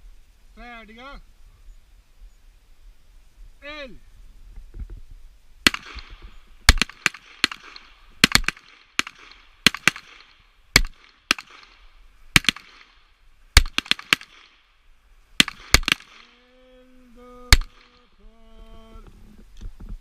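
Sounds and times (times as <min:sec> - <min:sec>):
pistol shots echoing: 0:05.6 - 0:13.0, 0:13.6 - 0:14.6, 0:15.4 - 0:16.4, 0:17.5 - 0:18.0.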